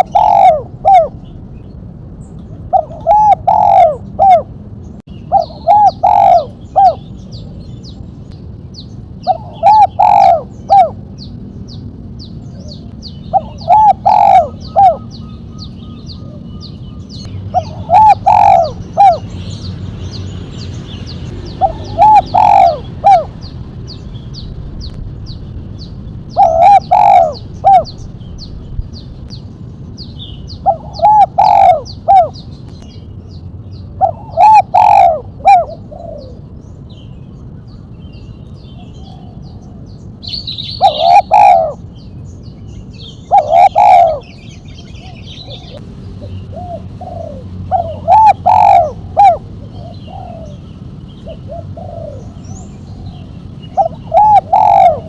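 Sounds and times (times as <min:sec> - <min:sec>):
dove cooing: 0:00.0 - 0:01.3, 0:02.5 - 0:04.6, 0:05.2 - 0:07.2, 0:09.2 - 0:11.1, 0:12.5 - 0:19.4, 0:21.4 - 0:23.6, 0:26.3 - 0:28.1, 0:30.5 - 0:32.4, 0:34.0 - 0:36.5, 0:40.8 - 0:41.8, 0:43.0 - 0:55.0.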